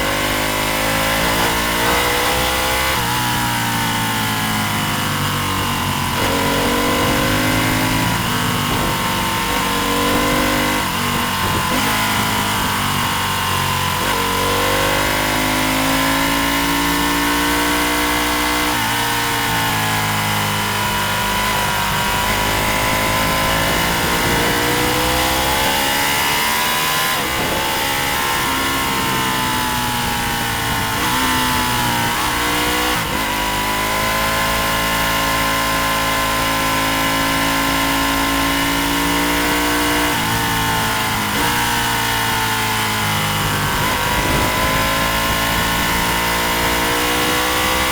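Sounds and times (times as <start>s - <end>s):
racing motorcycle engine: 0.0s - 47.9s
wind noise: 5.6s - 14.2s, 18.6s - 34.9s, 39.9s - 47.9s.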